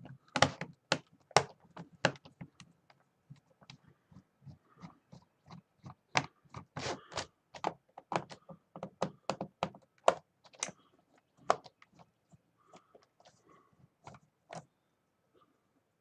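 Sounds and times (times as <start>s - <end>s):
plastic keyboard clicks and knocks: 0.0s - 3.8s, 4.5s - 10.8s, 11.4s - 12.1s, 14.1s - 14.7s.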